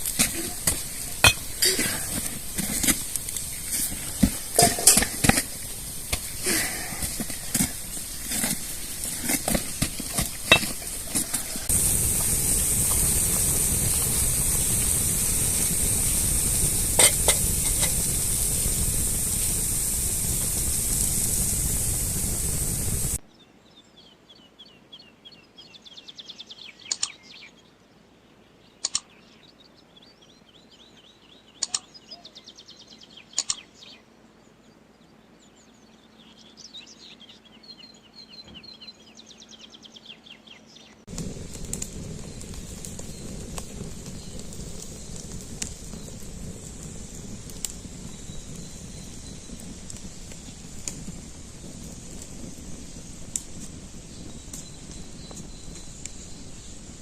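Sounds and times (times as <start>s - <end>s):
food sizzling in a pan: 0.0s - 23.2s, 41.1s - 57.0s
small birds chirping: 0.0s - 57.0s
sharp clicks: 26.9s - 27.2s, 28.8s - 29.2s, 31.6s - 31.9s, 33.4s - 33.7s.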